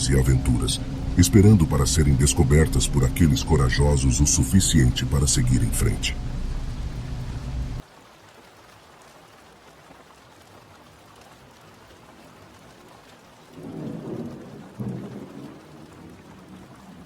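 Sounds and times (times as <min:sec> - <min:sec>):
thunder rumbling: 0:00.0 - 0:07.8
steady rain falling: 0:00.0 - 0:17.0.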